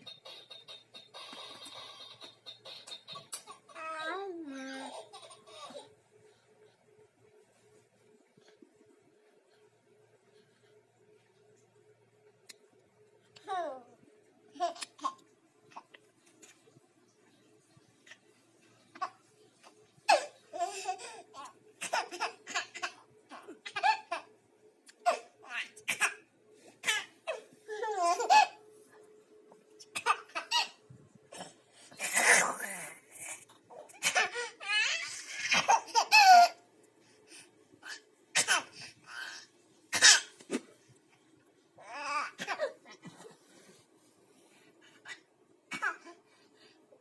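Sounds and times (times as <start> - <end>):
baby laughing: 1.2 - 5.9, 20.1 - 24.3, 26.8 - 28.6, 29.9 - 30.8, 33.7 - 36.6
baby laughing and squealing: 33.7 - 36.6.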